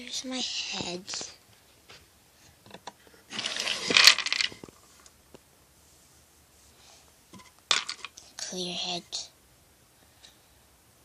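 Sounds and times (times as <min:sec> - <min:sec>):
plastic toy bricks clattering: 0:03.3 - 0:04.7, 0:07.7 - 0:08.1.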